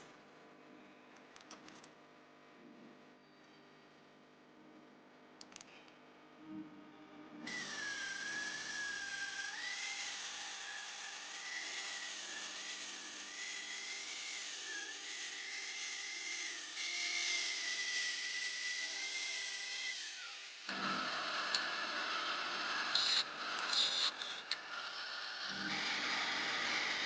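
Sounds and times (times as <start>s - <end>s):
power tool whining on steel: 7.4s - 27.0s.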